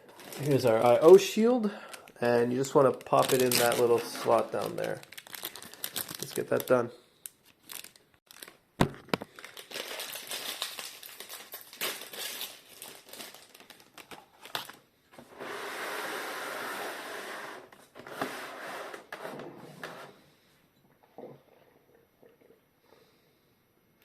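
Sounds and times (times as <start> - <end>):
plastic crinkling: 0.0 - 14.9.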